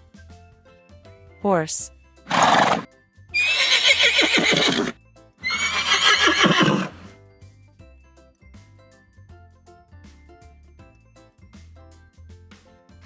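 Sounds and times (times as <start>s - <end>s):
soft background music: 0.0s - 13.0s
horse neighing: 2.3s - 7.1s.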